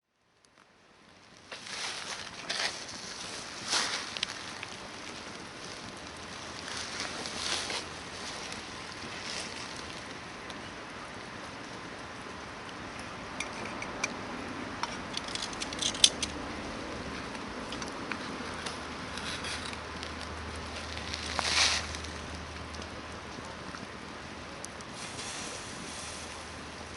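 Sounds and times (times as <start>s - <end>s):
fire crackles and pops: 0.0s - 26.9s
campfire hissing: 0.2s - 26.9s.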